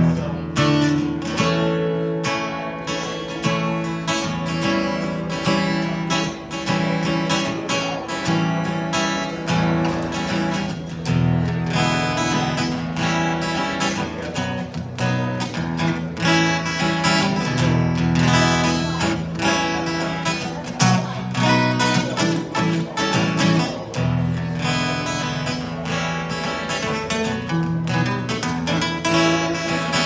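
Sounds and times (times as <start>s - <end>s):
acoustic guitar strumming: 0.0s - 30.0s.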